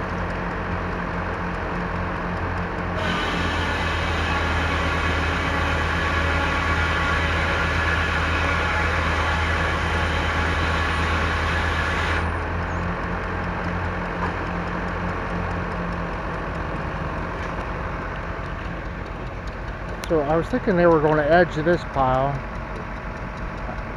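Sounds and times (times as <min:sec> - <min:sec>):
engine drone: 0:00.0 - 0:23.9
saw hissing: 0:03.0 - 0:12.4.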